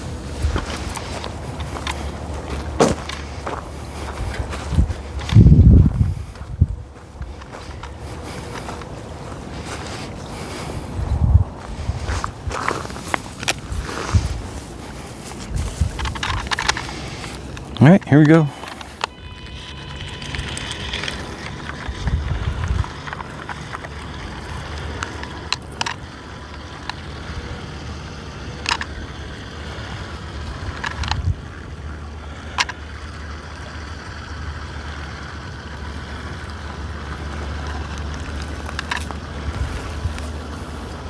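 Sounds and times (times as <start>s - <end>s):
low steady rumble: 0.0s - 41.0s
paddle wheels churning water: 0.0s - 41.0s
sharp clicks: 15.4s - 27.5s
small electric motor whine: 18.6s - 41.0s.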